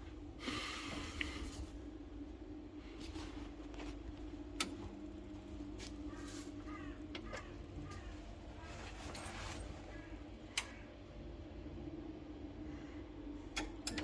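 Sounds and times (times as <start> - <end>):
boiler motor humming: 0.0 - 14.0
faint boiler hum: 0.0 - 14.0
boiler click: 4.5 - 4.8.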